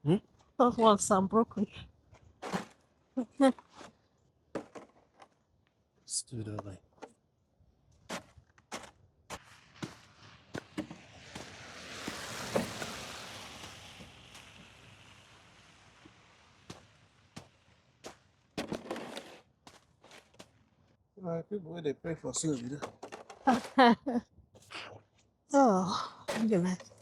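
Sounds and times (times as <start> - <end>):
hissing rush with crack: 9.4 - 18.0.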